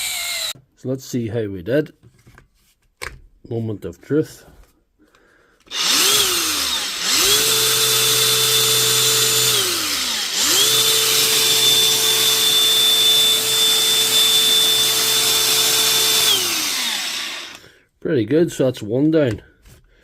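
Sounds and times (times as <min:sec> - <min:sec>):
angle grinder whining: 0:00.0 - 0:00.6, 0:05.7 - 0:17.7.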